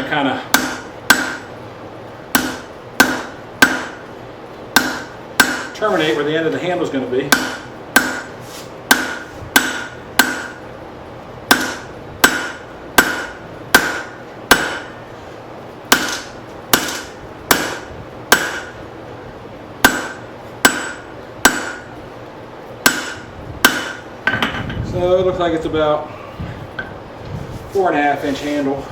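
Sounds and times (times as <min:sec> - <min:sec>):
hammer ringing on steel on anvil: 0:00.5 - 0:01.4, 0:02.4 - 0:04.0, 0:04.8 - 0:05.7, 0:07.3 - 0:08.3, 0:08.9 - 0:10.6, 0:11.5 - 0:14.9, 0:19.9 - 0:21.9, 0:22.9 - 0:24.0.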